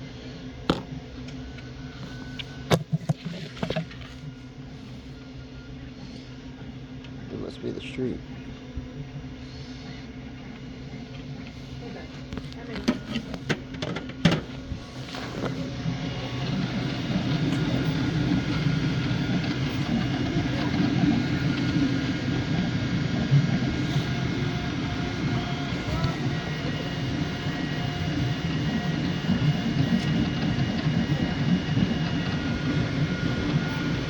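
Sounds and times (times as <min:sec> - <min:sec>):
faint whining tones: 0:00.0 - 0:34.0.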